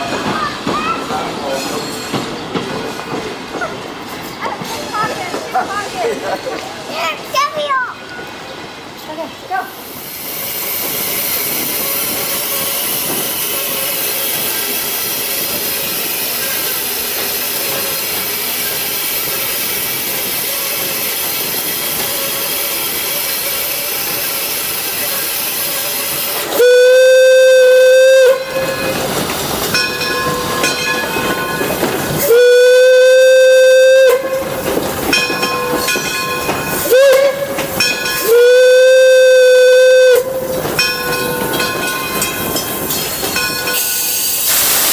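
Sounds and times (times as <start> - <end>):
loud steam hiss: 0.0 - 44.9
steam whistle blasts: 26.0 - 28.9, 32.2 - 34.6, 36.7 - 40.6, 43.8 - 44.9.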